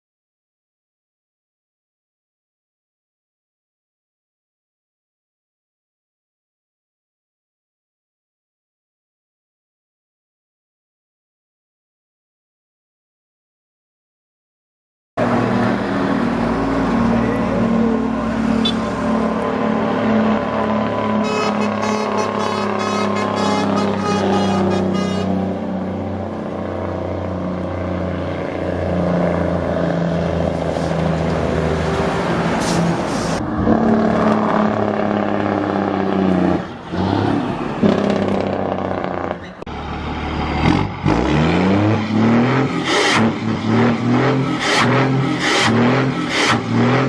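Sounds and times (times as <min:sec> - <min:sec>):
motor vehicle engine running hard: 0:15.2 - 0:47.0.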